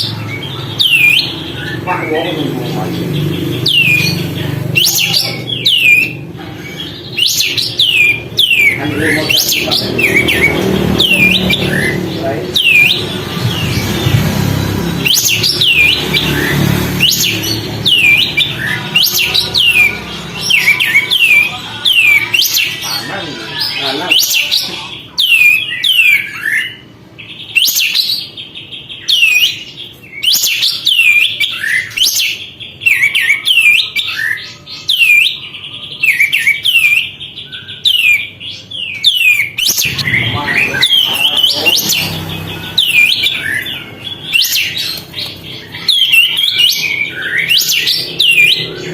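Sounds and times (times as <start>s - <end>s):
songbird chirping rapidly: 0.0s - 48.9s.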